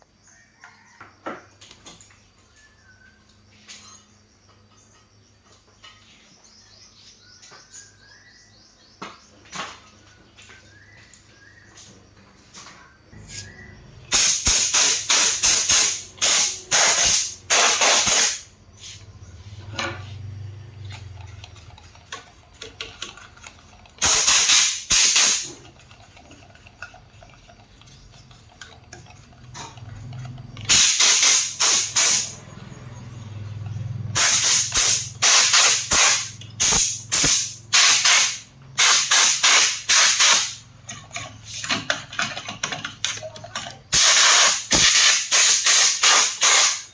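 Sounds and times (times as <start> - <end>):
aerosol can spraying: 14.1 - 19.0, 24.0 - 25.6, 30.7 - 32.4, 34.2 - 40.6, 44.0 - 46.9.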